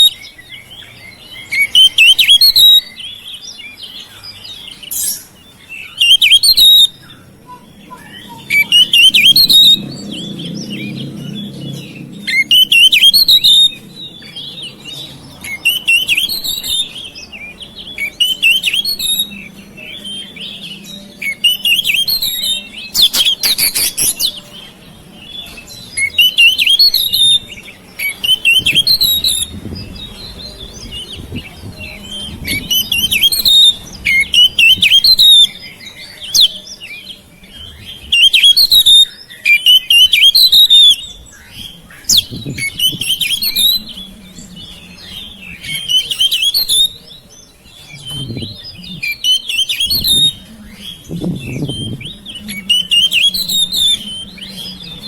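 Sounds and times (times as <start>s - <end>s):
bird singing chirps and whistles: 0.0s - 55.0s.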